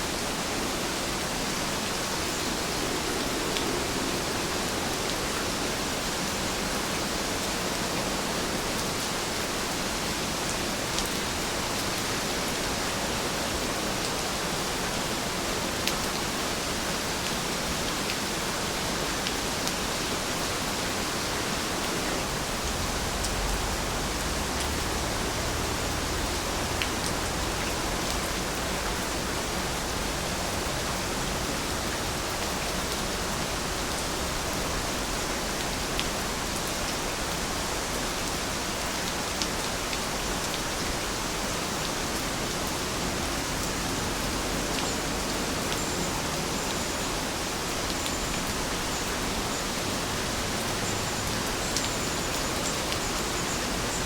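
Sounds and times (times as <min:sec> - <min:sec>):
steady rain falling: 0:00.0 - 0:54.0
faint raindrop ticks: 0:47.8 - 0:48.7.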